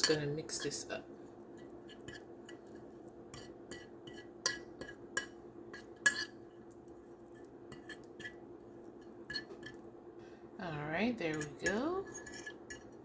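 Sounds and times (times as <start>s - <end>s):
utensil stirring in a bowl: 0.0s - 10.2s, 11.0s - 13.0s
utensil clinking against bowl: 1.6s - 6.4s, 11.3s - 13.0s.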